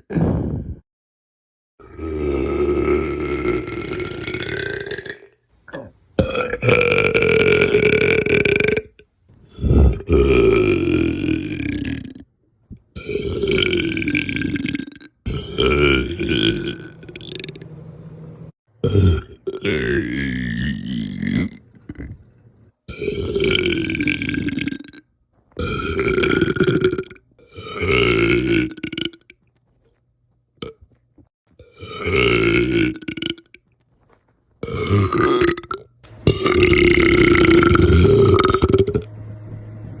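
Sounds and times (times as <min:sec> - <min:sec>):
person belching: 0:01.8 - 0:12.3, 0:13.0 - 0:17.7, 0:18.8 - 0:22.3, 0:22.9 - 0:25.0, 0:25.6 - 0:29.3, 0:31.6 - 0:33.6, 0:34.6 - 0:39.1.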